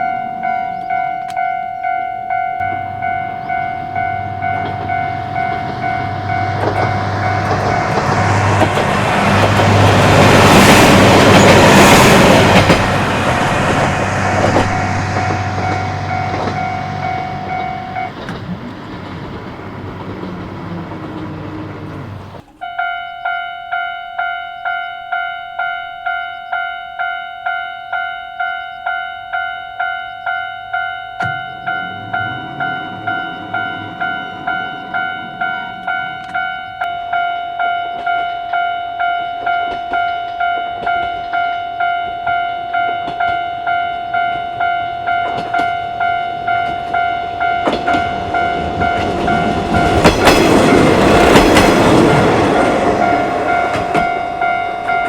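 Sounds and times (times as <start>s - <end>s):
level-crossing bell ringing: 0.0s - 18.2s, 22.6s - 55.0s
diesel railcar passing: 0.0s - 55.0s
wheels clacking over rail joints: 2.6s - 22.9s, 44.2s - 55.0s.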